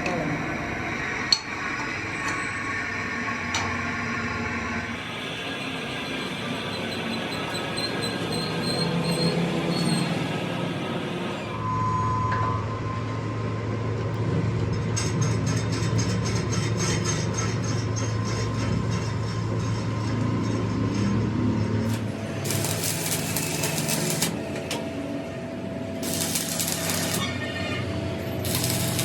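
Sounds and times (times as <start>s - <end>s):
harsh hissing burst: 21.9s - 24.6s, 26.0s - 29.0s.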